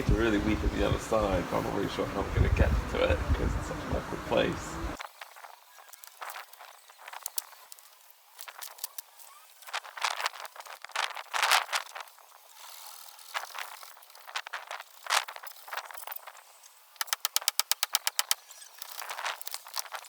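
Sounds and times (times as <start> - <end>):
timber cracking and creaking: 16.9 - 20.0.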